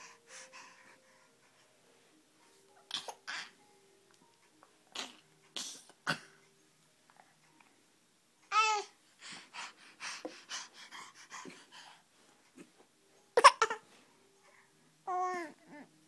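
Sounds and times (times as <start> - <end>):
dog breathing heavily: 9.2 - 12.2.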